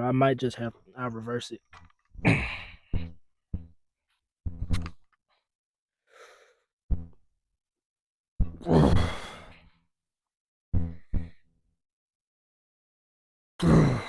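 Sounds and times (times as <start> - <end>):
man grunting with effort: 2.2 - 2.8, 8.6 - 9.4, 13.6 - 14.0.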